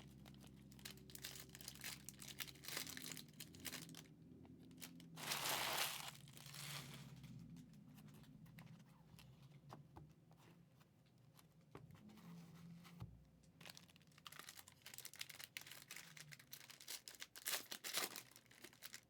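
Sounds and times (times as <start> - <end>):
card pack wrappers crinkling: 0.1 - 4.1, 4.8 - 7.2, 13.6 - 19.0.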